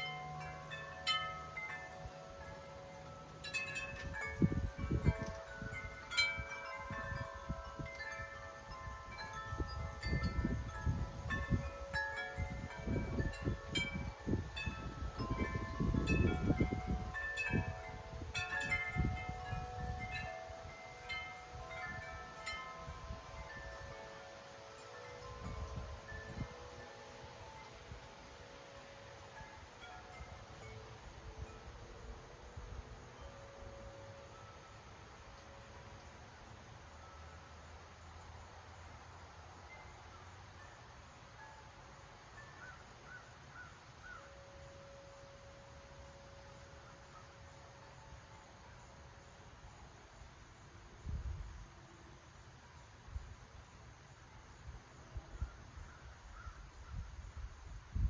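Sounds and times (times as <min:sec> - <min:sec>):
wind chimes jangling: 0:00.0 - 0:51.9
wind rumble on microphone: 0:03.3 - 0:24.1, 0:25.2 - 0:26.8, 0:50.9 - 0:52.0, 0:54.5 - 0:58.0.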